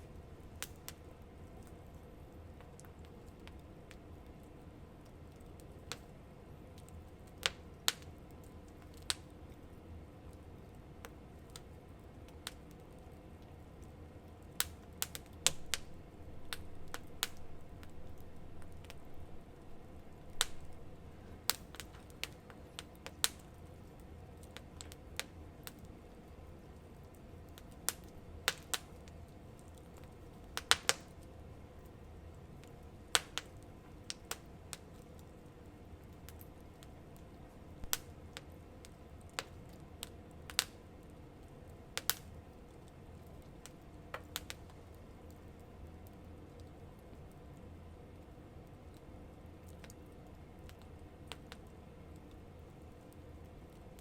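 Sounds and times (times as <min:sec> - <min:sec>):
campfire crackling and popping: 0:00.0 - 0:54.0
low steady rumble: 0:15.5 - 0:21.8.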